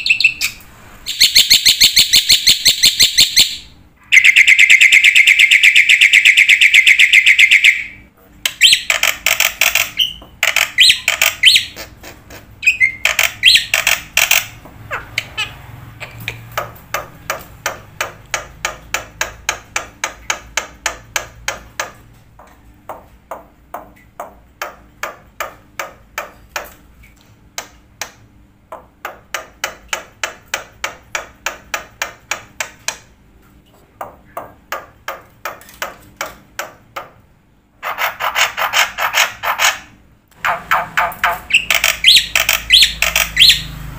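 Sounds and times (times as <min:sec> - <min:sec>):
rapid taps or clicks: 0:16.2 - 0:26.8, 0:27.6 - 0:33.1.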